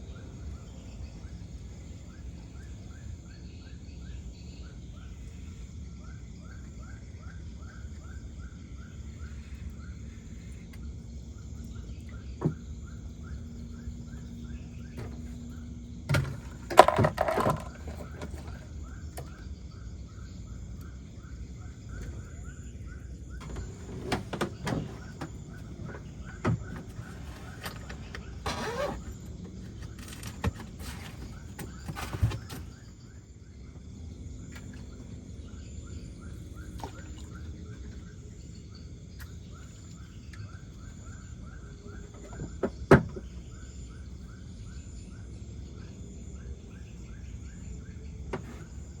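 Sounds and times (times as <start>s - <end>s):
insects chirping: 0.0s - 49.0s
low rumble of night ambience: 0.0s - 49.0s.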